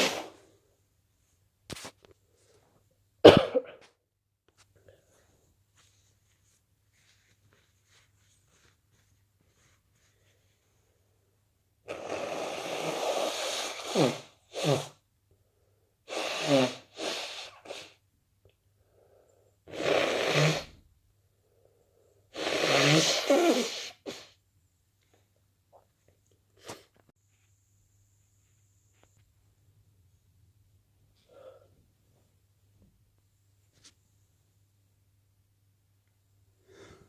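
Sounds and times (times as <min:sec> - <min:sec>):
person sneezing: 0:00.0 - 0:00.4, 0:03.2 - 0:03.9, 0:11.9 - 0:15.0, 0:16.1 - 0:18.0, 0:22.4 - 0:24.4.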